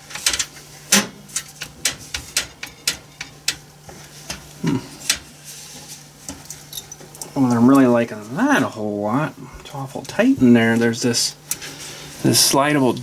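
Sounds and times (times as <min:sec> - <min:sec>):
hardware clicking inside computer case: 0:00.1 - 0:03.7.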